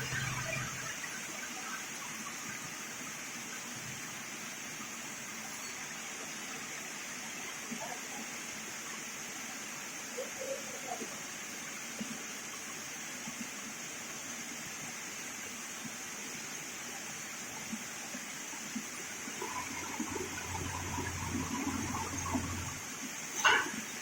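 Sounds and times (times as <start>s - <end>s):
low hum: 19.4s - 22.9s
faint whine: 19.4s - 23.5s.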